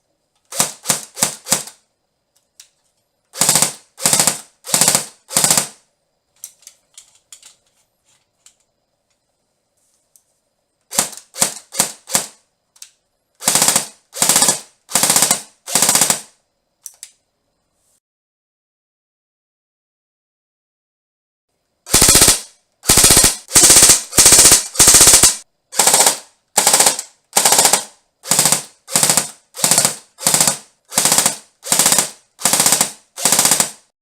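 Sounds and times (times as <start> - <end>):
silenced airsoft gun firing: 0.5 - 1.8, 3.4 - 5.8, 10.9 - 12.4, 13.4 - 16.4, 21.9 - 33.9.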